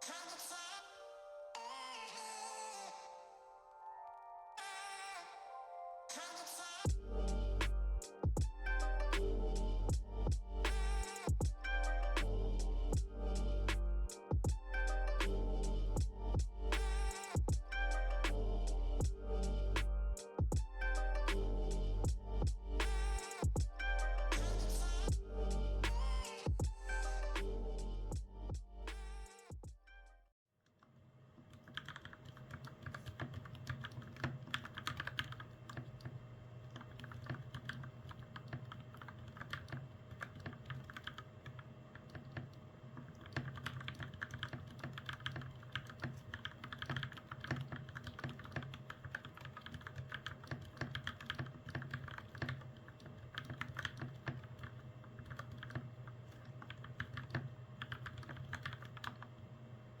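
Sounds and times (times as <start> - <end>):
mechanical keyboard typing: 31.5 - 59.3.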